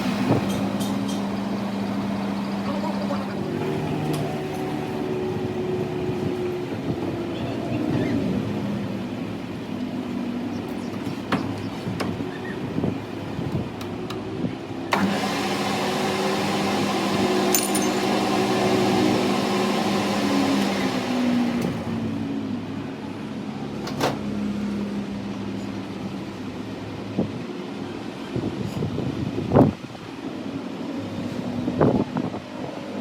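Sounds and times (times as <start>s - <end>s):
workshop machinery motor hum: 0.0s - 22.3s
motor winding down: 14.9s - 22.1s.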